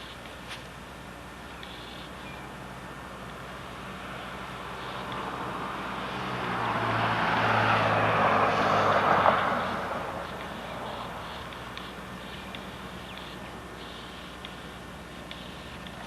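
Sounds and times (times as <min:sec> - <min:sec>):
vehicle passing by: 0:03.7 - 0:12.8.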